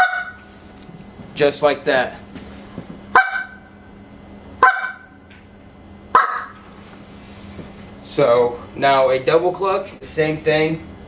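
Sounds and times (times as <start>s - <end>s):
goose call clucks: 0.0s - 0.4s, 3.2s - 3.6s, 4.6s - 5.2s, 6.1s - 6.6s.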